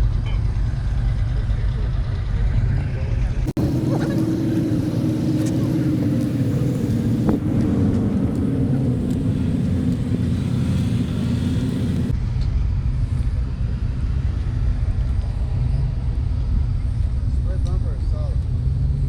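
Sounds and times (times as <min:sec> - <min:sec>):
car engine running: 0:00.0 - 0:12.1
road rumble: 0:00.0 - 0:19.0.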